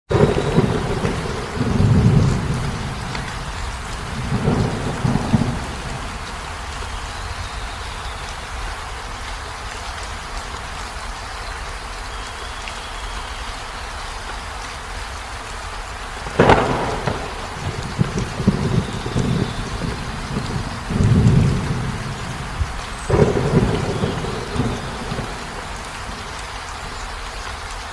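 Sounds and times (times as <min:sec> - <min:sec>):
sharp thunderclap: 0:00.1 - 0:06.4, 0:16.2 - 0:26.4
thunder rumbling: 0:00.1 - 0:08.6, 0:16.0 - 0:27.2
heavy rain: 0:00.1 - 0:27.9.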